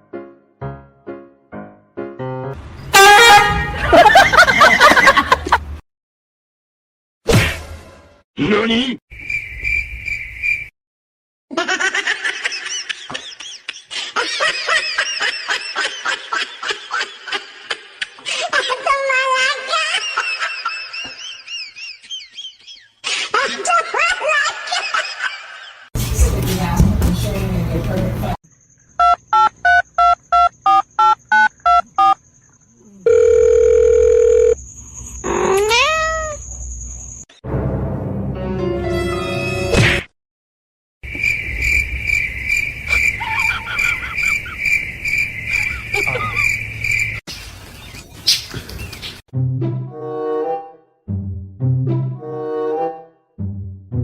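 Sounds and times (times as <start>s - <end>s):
high-pitched giggling laughter: 11.5s - 25.8s, 43.2s - 44.6s, 45.7s - 46.5s.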